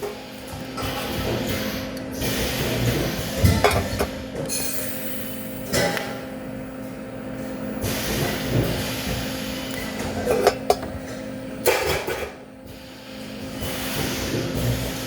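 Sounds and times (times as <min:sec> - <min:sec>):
electrical hum and hiss: 0:00.0 - 0:15.0.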